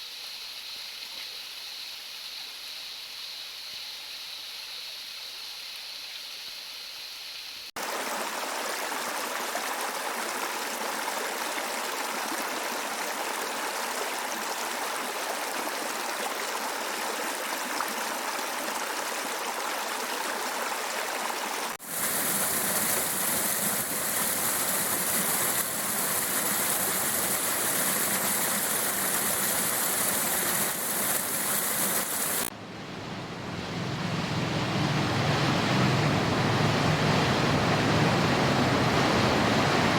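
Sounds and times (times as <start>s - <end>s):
waterfall rushing water: 7.8s - 39.9s.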